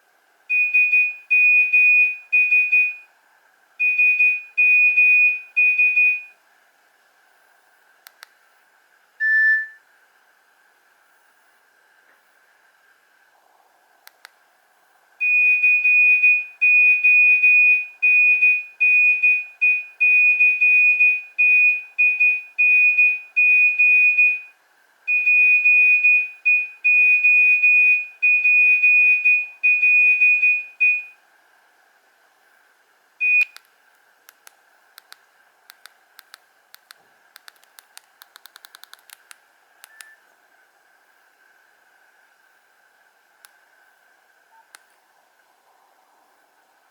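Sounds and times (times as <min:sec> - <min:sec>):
faint clicks: 0:08.0 - 0:08.4, 0:14.0 - 0:14.4, 0:33.4 - 0:40.2
short beep: 0:09.2 - 0:09.8.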